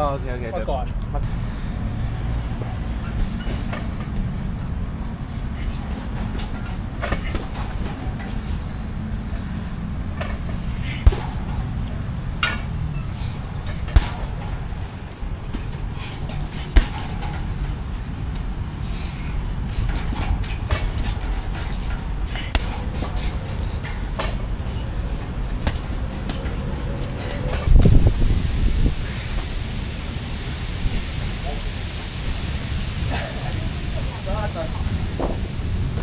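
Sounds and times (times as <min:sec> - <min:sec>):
moving vehicle rumble: 0:00.0 - 0:36.0
sharp knocks: 0:10.9 - 0:12.6.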